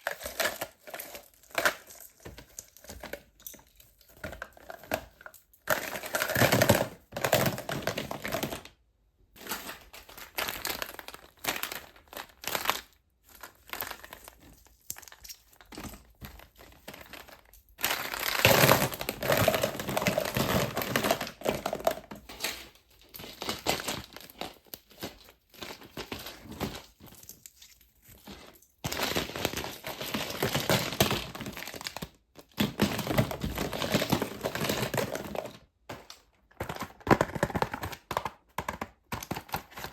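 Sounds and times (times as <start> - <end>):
wrappers crinkling and tearing: 0.0 - 3.8, 9.4 - 38.2.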